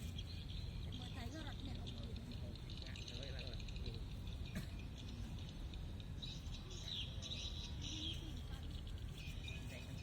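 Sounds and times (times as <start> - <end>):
birds chirping: 0.0 - 10.0.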